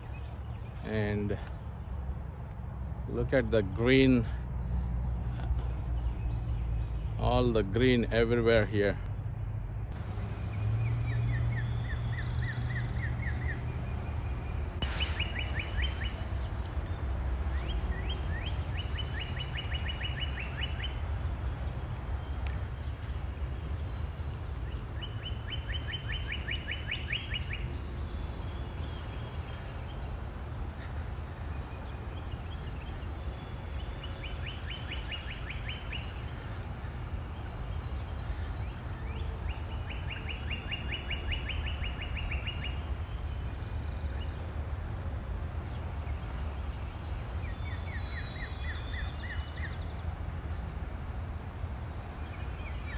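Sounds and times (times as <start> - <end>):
low background rush: 9.9 - 52.9
songbird trilling: 10.0 - 44.7, 45.5 - 50.9.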